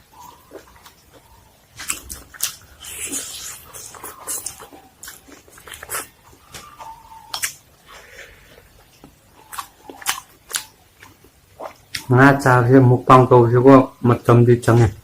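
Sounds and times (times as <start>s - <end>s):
biting and chewing: 0.0s - 12.1s
wet mouth clicks and smacks: 7.3s - 7.6s.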